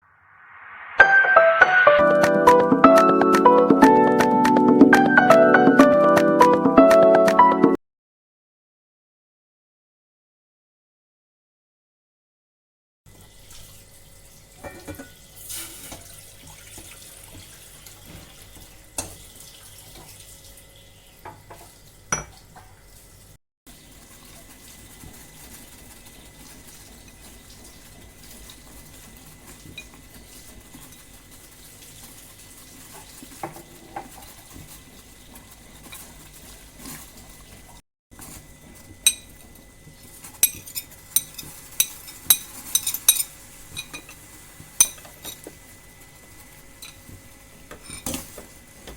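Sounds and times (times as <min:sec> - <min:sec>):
kitchen utensils and dishes handled: 0:14.6 - 0:16.1, 0:32.8 - 0:37.4, 0:38.2 - 0:39.5, 0:40.3 - 0:44.2, 0:44.8 - 0:45.6, 0:47.7 - 0:48.9.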